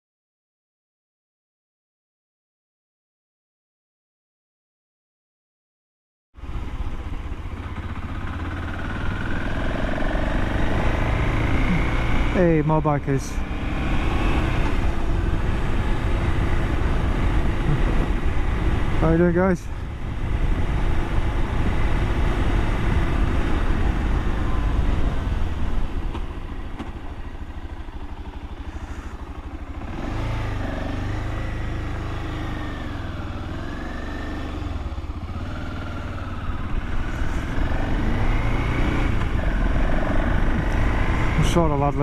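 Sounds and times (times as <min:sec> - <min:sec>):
motorcycle engine running: 0:06.4 - 0:42.0
wind noise: 0:14.7 - 0:18.9, 0:20.0 - 0:26.0.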